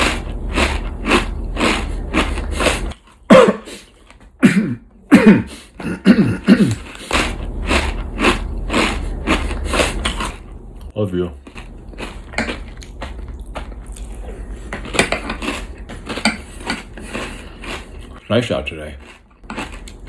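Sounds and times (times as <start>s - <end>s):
man chewing loudly: 0.0s - 18.3s, 19.0s - 20.0s
man clearing throat: 3.3s - 7.0s.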